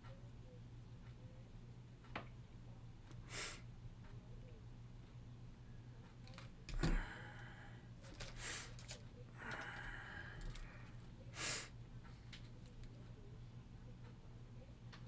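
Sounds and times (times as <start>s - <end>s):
low steady hum: 0.0s - 15.0s
person sighing: 6.7s - 7.8s, 9.4s - 10.8s.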